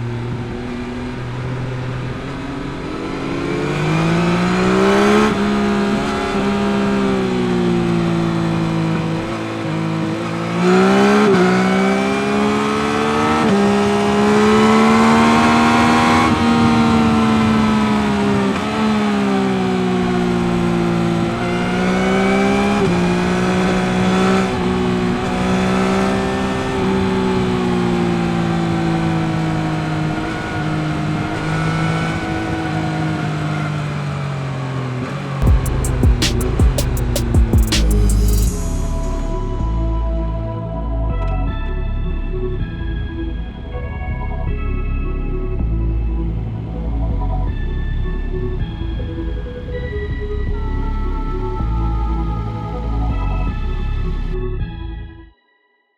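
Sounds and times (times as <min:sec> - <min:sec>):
motorcycle engine under way: 0:00.0 - 0:38.5.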